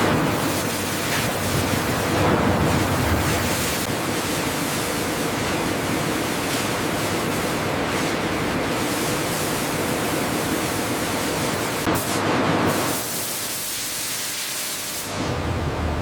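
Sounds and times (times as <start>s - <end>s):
factory equipment rushing hiss: 0.0s - 16.0s
low steady hum: 15.2s - 16.0s.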